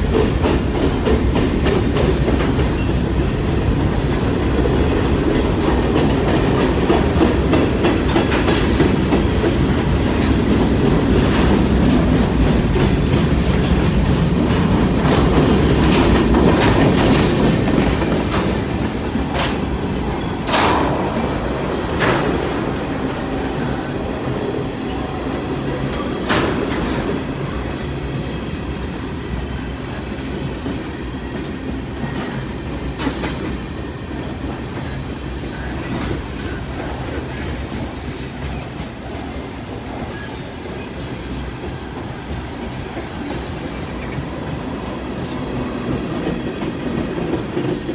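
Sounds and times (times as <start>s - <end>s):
train wheels rumbling on rail: 0.0s - 47.9s
metallic clanks: 15.0s - 25.1s.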